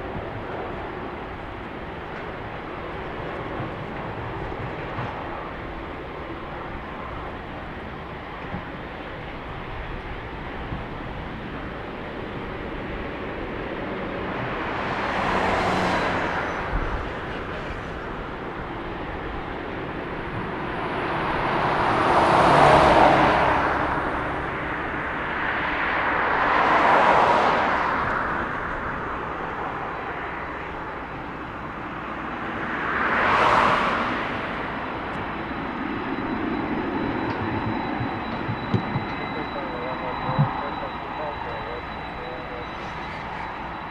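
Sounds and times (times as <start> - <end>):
jet engine roar: 0.0 - 43.9
faint high whine: 34.0 - 43.9.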